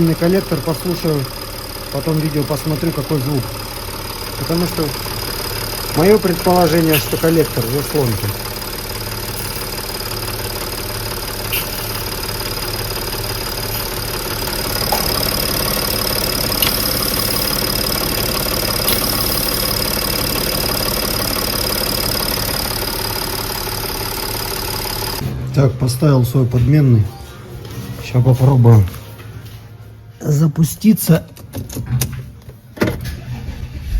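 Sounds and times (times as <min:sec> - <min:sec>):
car engine idling: 0:00.0 - 0:26.0
pulsing engine noise: 0:00.0 - 0:26.1.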